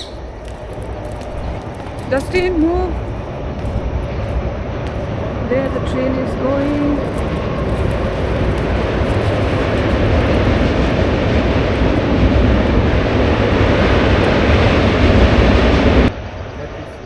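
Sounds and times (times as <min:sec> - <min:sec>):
train rumbling past: 0:00.0 - 0:17.0.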